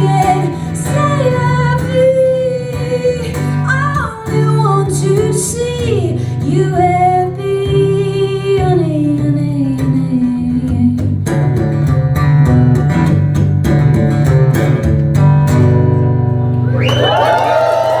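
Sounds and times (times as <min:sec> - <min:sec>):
woman singing wordless notes: 0:00.0 - 0:11.2
audience cheering: 0:16.6 - 0:18.0.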